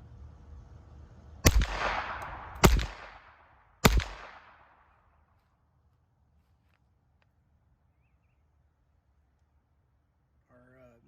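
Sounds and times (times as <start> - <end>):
pistol shots with echo: 1.4 - 5.0.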